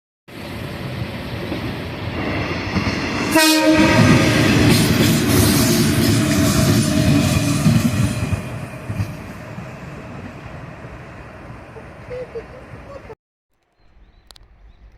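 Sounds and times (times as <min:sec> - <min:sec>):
electric train passing: 0:00.3 - 0:13.2
train horn blast: 0:03.3 - 0:08.8.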